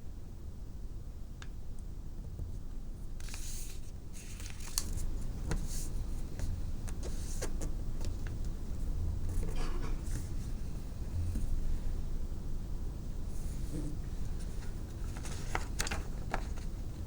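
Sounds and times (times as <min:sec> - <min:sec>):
steady low hum: 0:00.0 - 0:17.0
paper rustle: 0:03.2 - 0:08.1, 0:14.4 - 0:17.0
paper folding crinkles: 0:03.2 - 0:08.4, 0:13.4 - 0:17.0.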